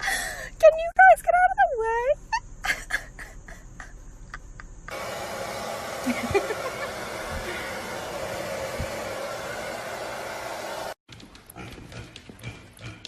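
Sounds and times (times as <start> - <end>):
motor blowing noise: 4.9 - 11.0.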